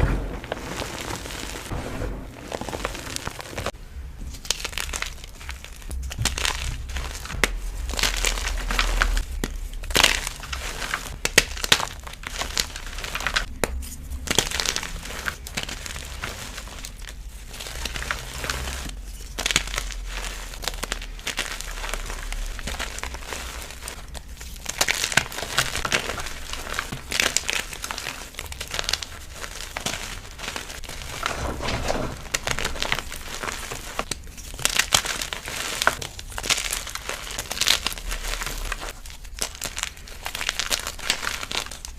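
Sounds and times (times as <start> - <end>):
chalk crunching by hand: 0.0 - 3.8.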